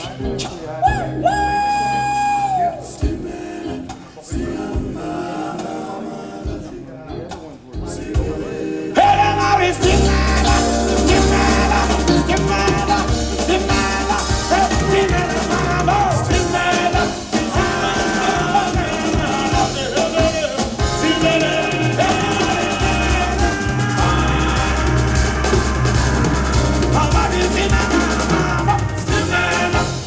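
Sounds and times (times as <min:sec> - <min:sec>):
person singing: 0:00.0 - 0:30.0
deep bass line: 0:07.8 - 0:30.0.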